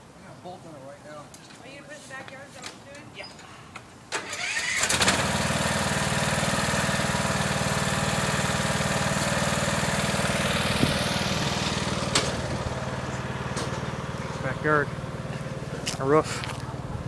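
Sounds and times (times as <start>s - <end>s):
lawn mower engine running: 4.2s - 17.0s.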